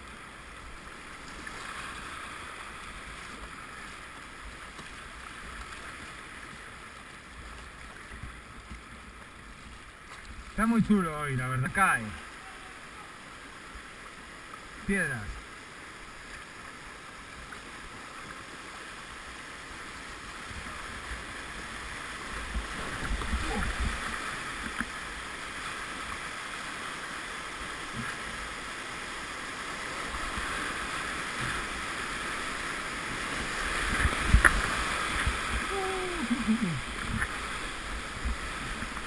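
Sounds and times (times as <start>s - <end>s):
river rapids rushing: 20.8s - 39.0s.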